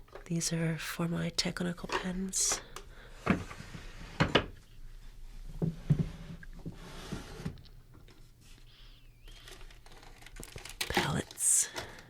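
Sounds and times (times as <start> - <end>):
art supplies clattering in drawer: 9.4 - 12.0.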